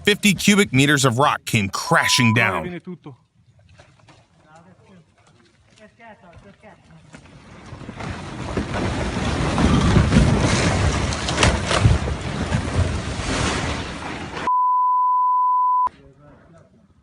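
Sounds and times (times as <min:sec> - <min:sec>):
censor bleep: 0:14.5 - 0:15.9.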